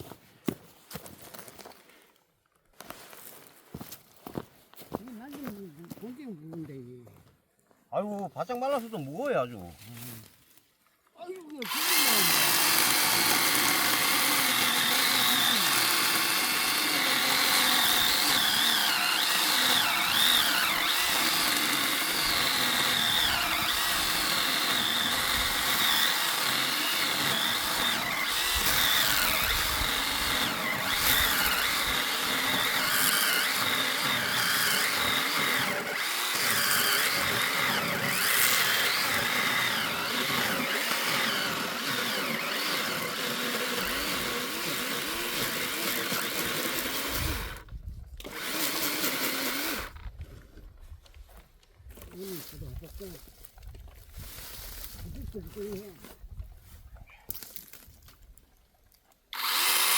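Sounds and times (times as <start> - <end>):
log splitter motor running: 11.6 - 47.6, 48.2 - 50.0, 59.3 - 59.9.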